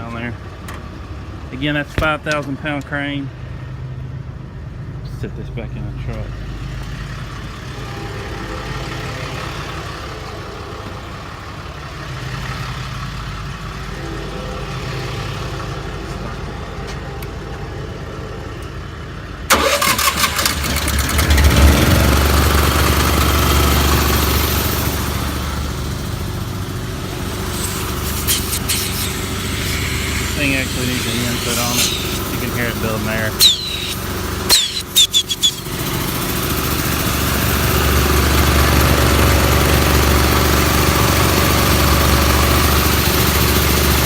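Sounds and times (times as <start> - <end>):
diesel engine idling: 0.0 - 44.0
air compressor running: 19.5 - 44.0.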